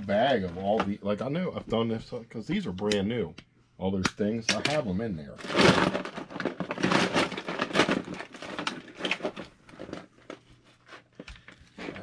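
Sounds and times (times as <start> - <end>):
bag rustling: 5.4 - 12.0.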